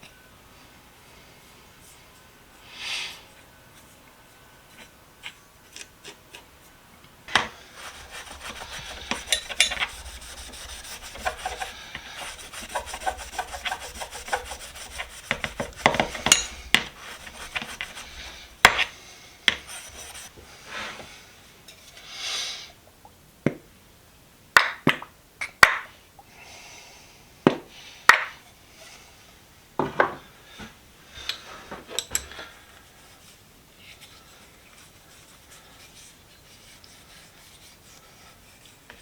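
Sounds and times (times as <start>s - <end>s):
metal tool being scrubbed: 7.8s - 18.9s, 19.6s - 20.3s.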